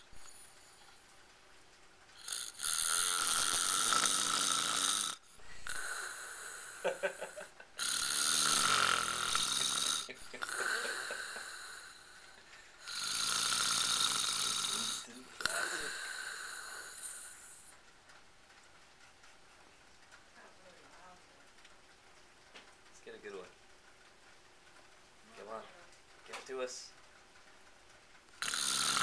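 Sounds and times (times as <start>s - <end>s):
quiet breaths: 0.0s - 21.8s, 22.9s - 29.0s
man snoring: 2.2s - 17.7s, 28.4s - 29.0s.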